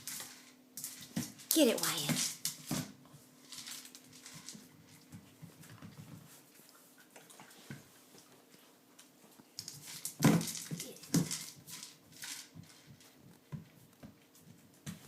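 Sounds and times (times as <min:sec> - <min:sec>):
kibble rattling inside toy: 0:03.4 - 0:05.2, 0:09.6 - 0:13.1.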